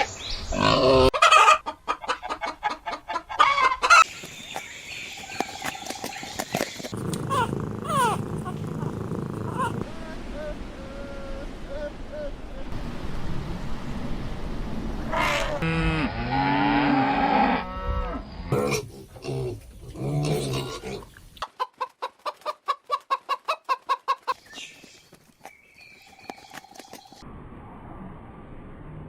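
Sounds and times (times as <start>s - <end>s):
chicken clucking: 1.1s - 12.7s, 21.4s - 24.4s
cow mooing: 7.1s - 10.4s.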